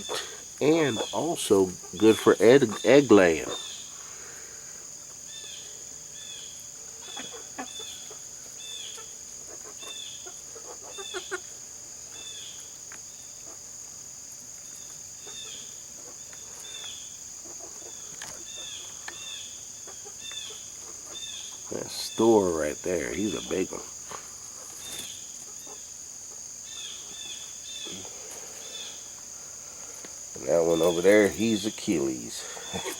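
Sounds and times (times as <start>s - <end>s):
bird chirps: 0.0s - 4.0s
chickens clucking: 0.0s - 5.6s, 6.3s - 32.9s
crickets droning: 0.0s - 32.9s.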